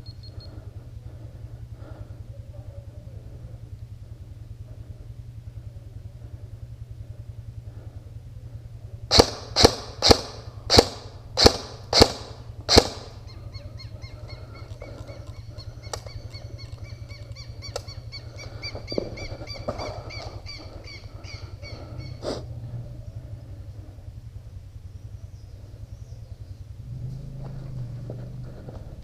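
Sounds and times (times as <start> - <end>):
steady low hum: 0.0 - 29.0
airsoft gun shots: 9.1 - 13.2
bird calling rapidly: 13.1 - 22.4.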